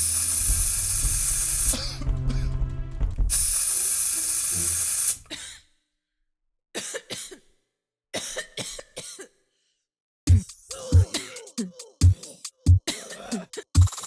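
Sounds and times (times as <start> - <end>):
loud hiss: 0.0 - 2.1, 3.2 - 5.3
person coughing: 1.6 - 2.6, 5.2 - 5.6, 6.8 - 7.5, 8.2 - 9.4, 10.7 - 13.8.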